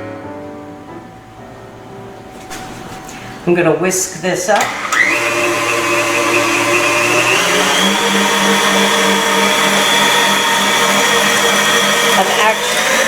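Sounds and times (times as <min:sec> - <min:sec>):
electric mixer whisking batter: 0:04.2 - 0:13.0.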